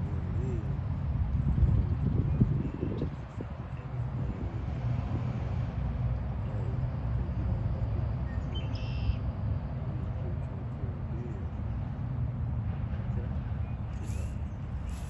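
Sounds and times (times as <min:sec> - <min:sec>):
low outdoor rumble: 0:00.0 - 0:15.0.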